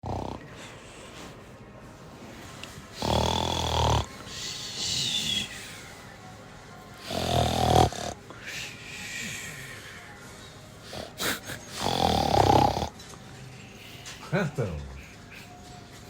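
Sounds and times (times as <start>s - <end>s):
person snoring: 0.0s - 0.4s, 2.9s - 5.7s, 7.0s - 8.2s, 10.8s - 12.9s.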